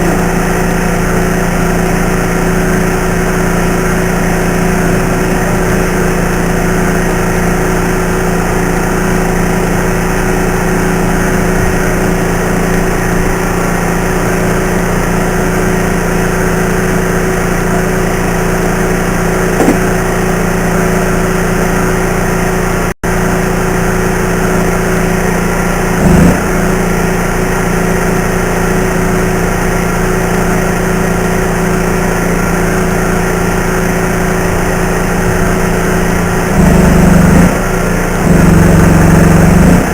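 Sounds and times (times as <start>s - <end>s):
welding machine hum: 0.0s - 39.9s
short thump: 19.6s - 20.0s.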